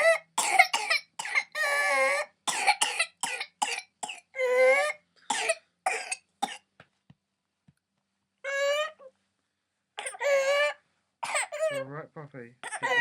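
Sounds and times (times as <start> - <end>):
toddler coughing: 0.0 - 6.6, 10.0 - 11.8, 12.6 - 13.0.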